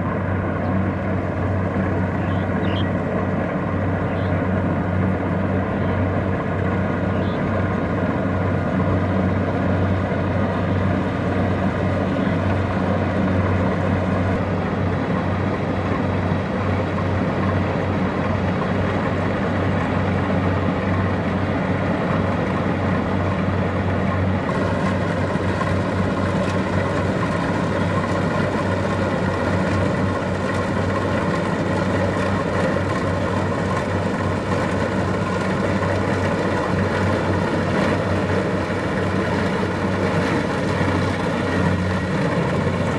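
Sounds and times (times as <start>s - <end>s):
combine harvester diesel engine drone: 0.0s - 42.9s.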